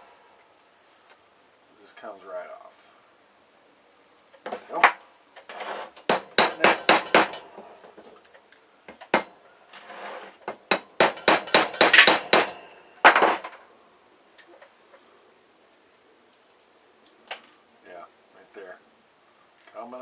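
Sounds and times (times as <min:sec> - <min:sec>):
handling and scraping: 0:04.0 - 0:13.7
hammer striking electronic parts: 0:06.1 - 0:07.4, 0:10.7 - 0:12.6.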